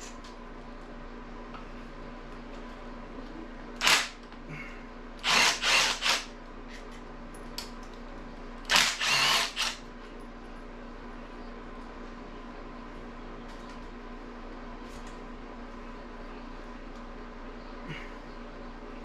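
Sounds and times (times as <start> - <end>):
power drill bursts: 3.8 - 4.2, 5.2 - 6.3, 8.7 - 9.8.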